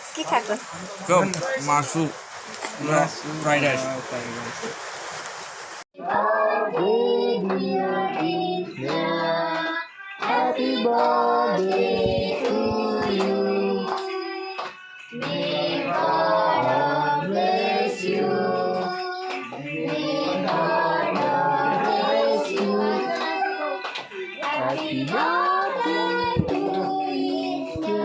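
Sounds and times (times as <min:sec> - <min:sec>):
women and children singing: 0:06.0 - 0:28.0.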